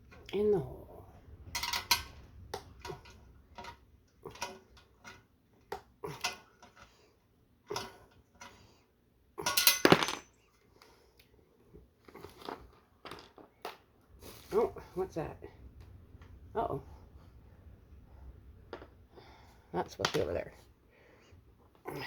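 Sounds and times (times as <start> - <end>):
metal parts clicking and clinking: 9.4 - 10.4
metal parts clattering: 9.5 - 10.3.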